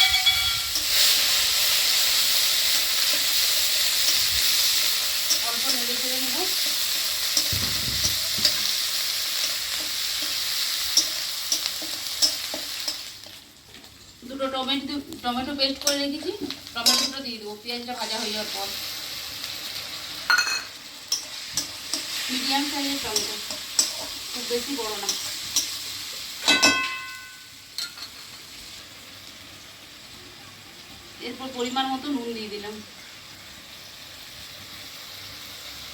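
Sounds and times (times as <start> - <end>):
paste sizzling in hot oil: 0.0 - 14.2, 17.6 - 35.9
utensil clanging against pan: 26.4 - 28.2.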